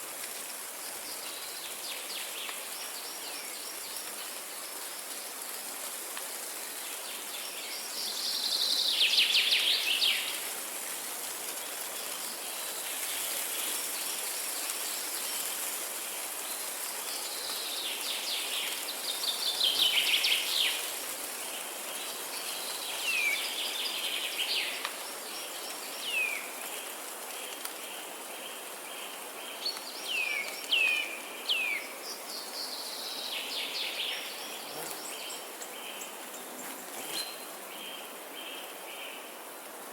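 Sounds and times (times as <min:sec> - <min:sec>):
steady high hiss: 0:00.0 - 0:39.9
songbirds singing: 0:21.6 - 0:39.3.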